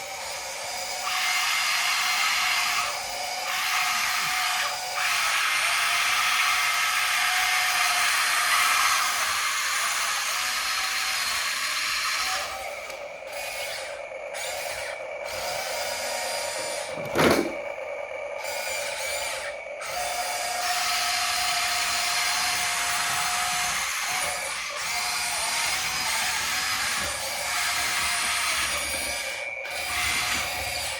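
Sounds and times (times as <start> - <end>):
toy electric motors whining: 0.0 - 30.9
loud knock: 17.0 - 17.6.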